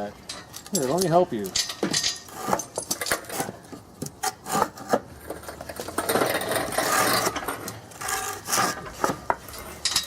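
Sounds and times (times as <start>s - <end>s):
metal knocks and clinks: 0.3s - 3.2s
hoist wheels scraping rattle: 0.3s - 3.6s, 4.5s - 10.0s.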